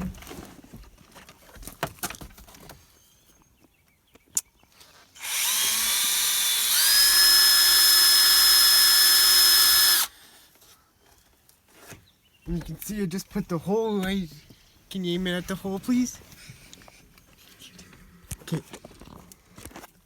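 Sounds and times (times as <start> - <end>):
power drill whining: 5.2 - 10.3.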